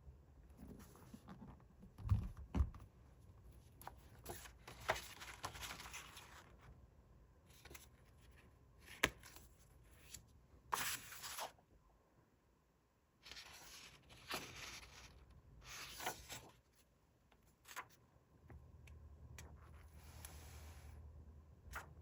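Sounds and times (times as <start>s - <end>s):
pages being turned: 13.2s - 16.6s.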